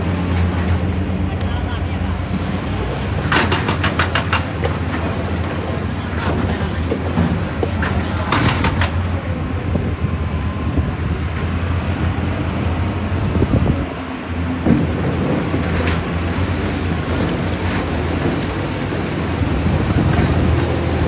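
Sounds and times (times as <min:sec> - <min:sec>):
heavy machinery humming: 0:00.0 - 0:21.0
knocks and clanks: 0:03.1 - 0:09.4.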